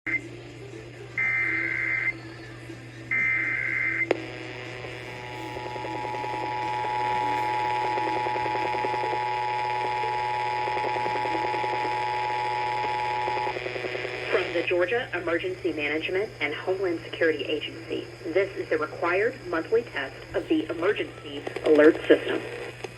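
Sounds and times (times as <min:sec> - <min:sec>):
click: 0:04.0 - 0:04.2.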